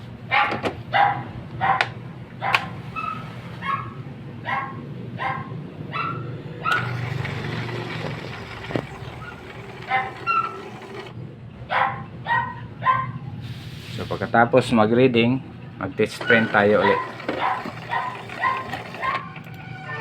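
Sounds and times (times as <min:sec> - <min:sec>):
dog barking: 0:00.3 - 0:06.3, 0:11.7 - 0:13.2
steady whirring noise: 0:06.6 - 0:11.2, 0:16.2 - 0:20.0.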